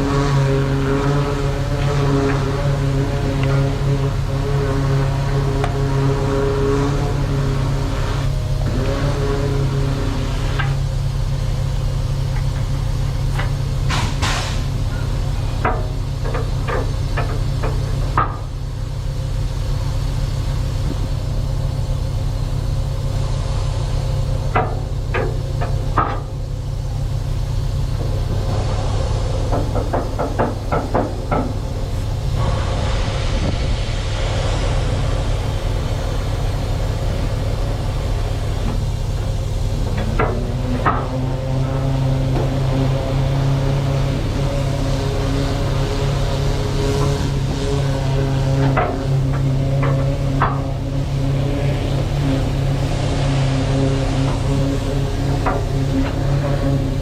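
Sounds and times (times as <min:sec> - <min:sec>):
diesel truck engine idling: 0:00.0 - 0:57.0
sharp metallic clicks and knocks: 0:13.3 - 0:18.5, 0:24.5 - 0:26.4, 0:29.4 - 0:31.7.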